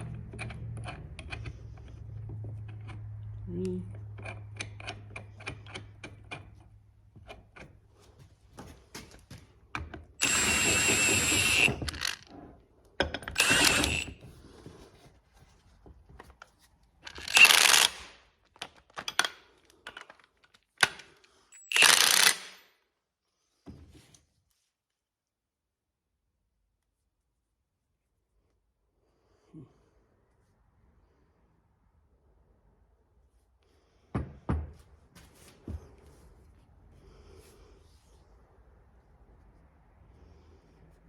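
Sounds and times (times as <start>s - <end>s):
metal parts clicking: 10.2s - 12.3s, 17.0s - 22.6s
power tool whining: 10.2s - 12.3s, 13.3s - 14.2s, 17.1s - 18.1s, 21.6s - 22.5s.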